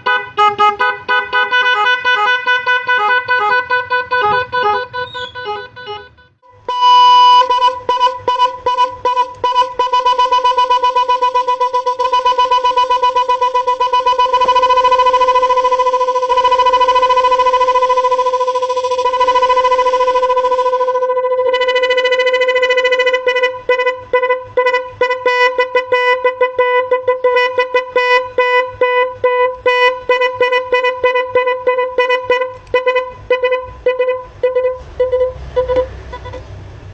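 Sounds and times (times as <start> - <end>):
buzzy horn with stuttering echo: 0.0 - 36.4
rapid repeated beeps: 6.8 - 20.6.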